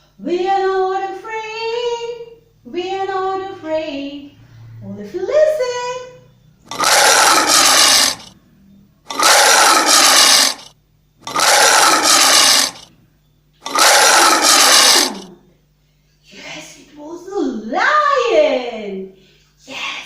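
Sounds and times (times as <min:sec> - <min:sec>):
lion roaring: 0:06.7 - 0:08.3, 0:09.1 - 0:12.8, 0:13.6 - 0:15.3.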